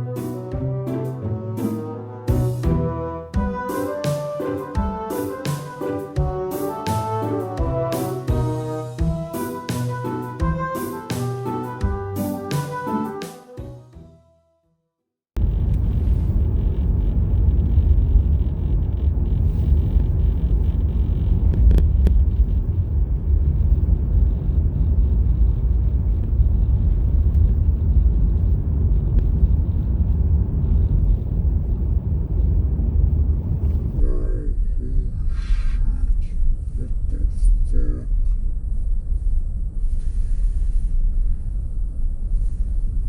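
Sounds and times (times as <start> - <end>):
car interior road and engine noise: 15.4 - 34.0.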